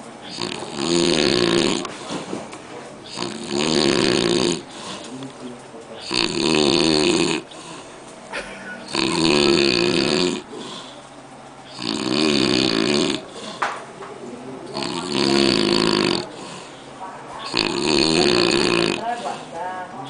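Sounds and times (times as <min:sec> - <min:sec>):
man snoring heavily: 0:00.2 - 0:01.8, 0:03.1 - 0:05.0, 0:06.0 - 0:07.9, 0:08.8 - 0:11.0, 0:11.7 - 0:13.6, 0:14.7 - 0:16.8, 0:17.5 - 0:19.4.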